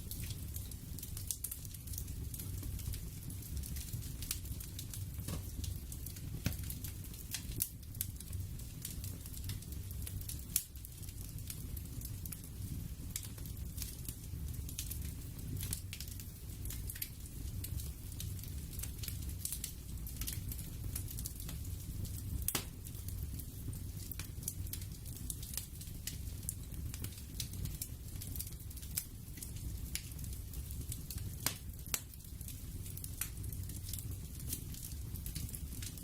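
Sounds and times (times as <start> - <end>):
fire crackling with pops and snaps: 0.0 - 36.0
low fire rumble: 0.0 - 36.0.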